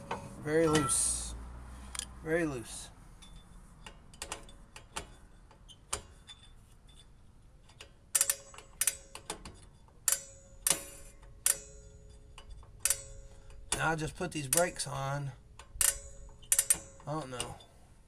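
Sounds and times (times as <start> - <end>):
sharp metallic clicks ringing: 0.1 - 1.3, 14.4 - 15.0, 15.6 - 17.7.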